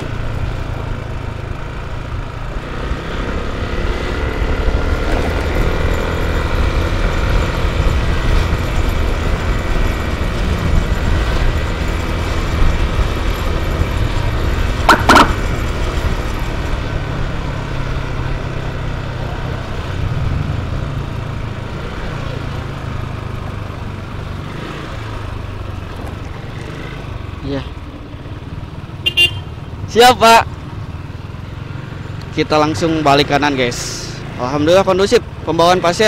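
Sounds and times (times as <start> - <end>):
motorcycle engine and wind rumble: 0.0 - 36.0
vehicle horn double beep: 14.9 - 15.5, 29.0 - 29.6.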